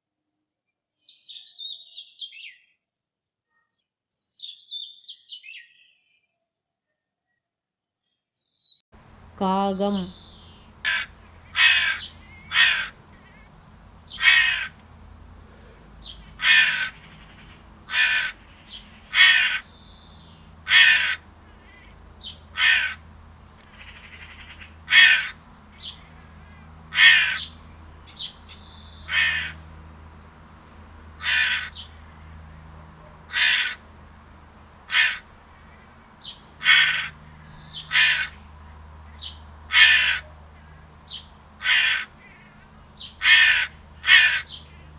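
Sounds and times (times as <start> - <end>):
crow cawing: 10.1 - 30.0, 31.0 - 34.0, 34.6 - 44.9.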